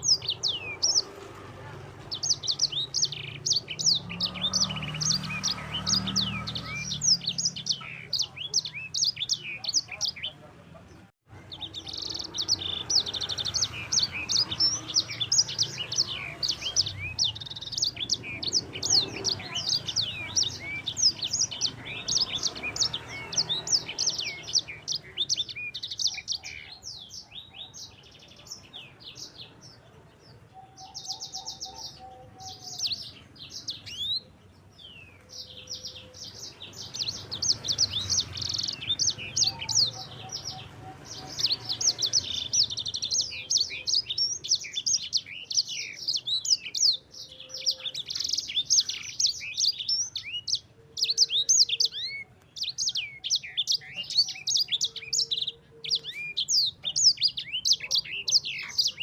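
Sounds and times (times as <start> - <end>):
songbird chirping and trilling: 0.0 - 59.0.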